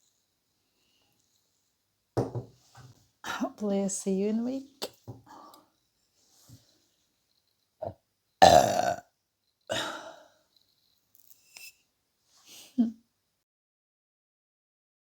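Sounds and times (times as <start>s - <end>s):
person burping: 7.8s - 9.1s.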